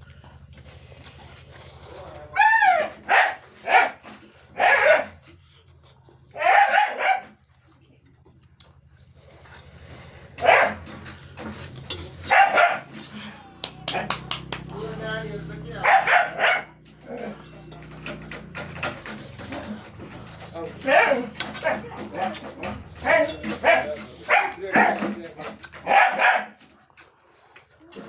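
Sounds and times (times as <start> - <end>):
dog barking: 2.3 - 5.2, 6.4 - 7.4, 10.4 - 11.0, 12.2 - 13.1, 13.9 - 14.2, 15.8 - 17.4, 20.8 - 25.1, 25.7 - 26.6.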